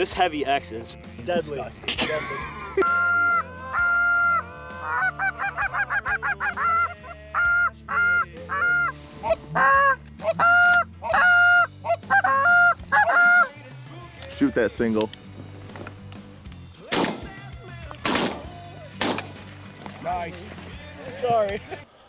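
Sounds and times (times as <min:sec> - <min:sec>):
goose clucking: 0:02.8 - 0:13.6
goose honking: 0:02.8 - 0:13.6.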